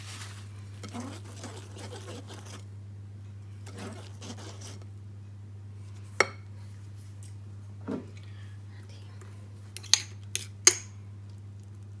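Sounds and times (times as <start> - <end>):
soft rustling: 0.0 - 2.6
steady low hum: 0.0 - 12.0.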